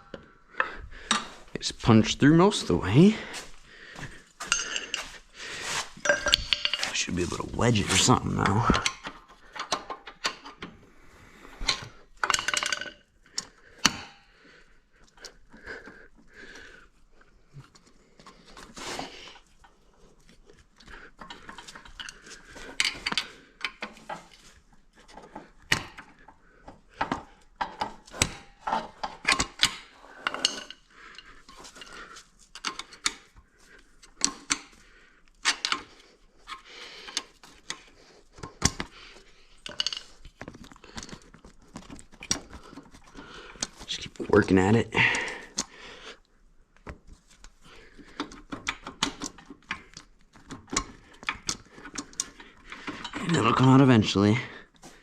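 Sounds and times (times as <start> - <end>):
metal tools clinking and scraping: 1.0 - 10.7, 11.7 - 14.2, 21.2 - 26.4, 27.0 - 34.8, 35.4 - 45.7, 48.0 - 54.5.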